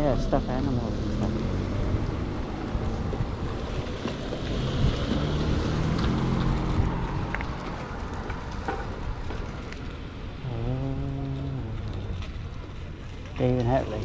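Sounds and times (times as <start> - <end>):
car traffic: 0.0 - 14.0
wind rumbling on microphone: 0.0 - 14.0.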